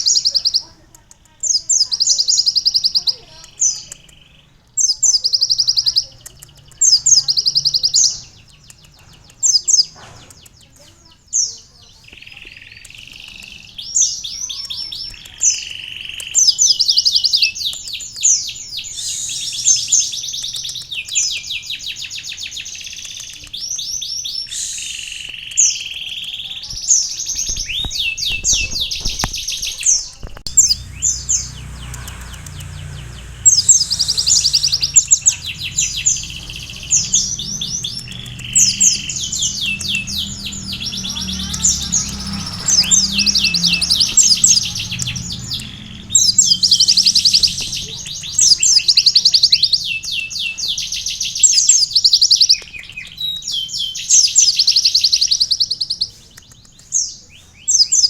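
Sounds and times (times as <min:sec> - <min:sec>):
bird singing trilled phrases: 0:00.0 - 0:58.0
low rumble: 0:27.3 - 0:48.8.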